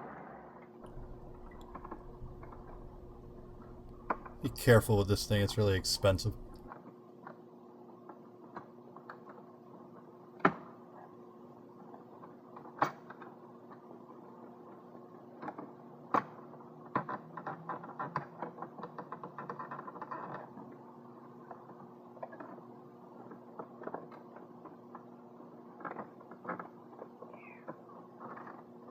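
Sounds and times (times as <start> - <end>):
faint steady hum: 0.8 - 6.7.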